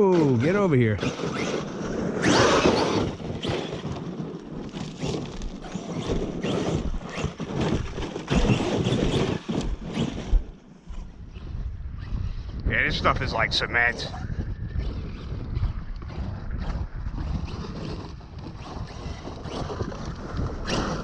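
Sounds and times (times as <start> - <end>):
wind on microphone: 0.0 - 21.0
tyres scrabbling over stones: 1.0 - 10.4.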